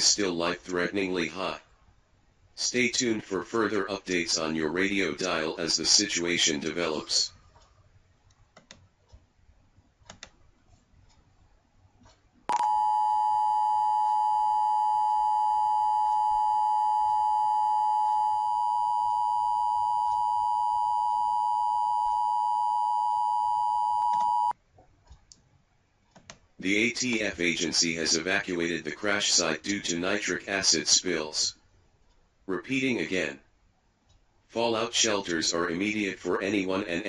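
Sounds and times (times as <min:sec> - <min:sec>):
faint clicks: 0:10.0 - 0:11.3, 0:24.8 - 0:26.5.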